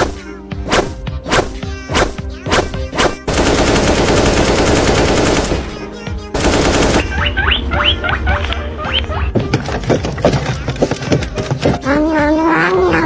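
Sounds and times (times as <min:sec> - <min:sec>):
cartoon whacks: 0:00.0 - 0:03.3
rapid-fire rattling: 0:03.2 - 0:07.1.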